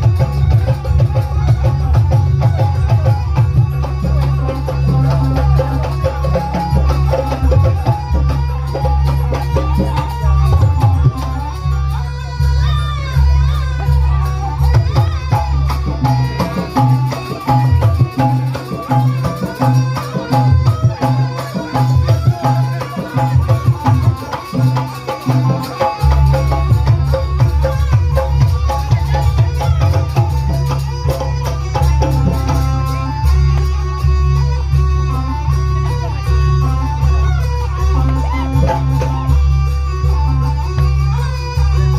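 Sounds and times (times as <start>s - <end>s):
amplified traditional music: 0.0s - 41.9s
hand drums: 0.0s - 41.9s.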